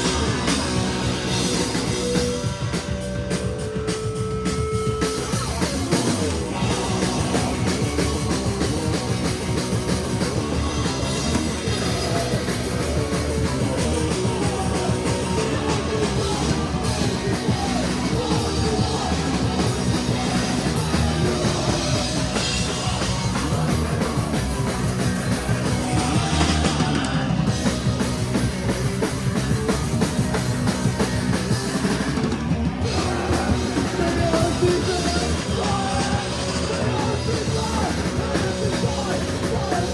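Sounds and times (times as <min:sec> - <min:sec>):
distorted electric guitars: 0:00.0 - 0:39.9
drum kit: 0:00.0 - 0:39.9
person shouting singing: 0:05.5 - 0:08.4, 0:10.1 - 0:27.6, 0:32.8 - 0:39.9.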